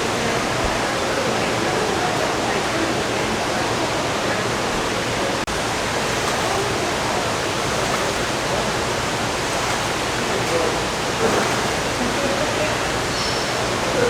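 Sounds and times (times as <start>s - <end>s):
waterfall rushing: 5.5s - 13.9s.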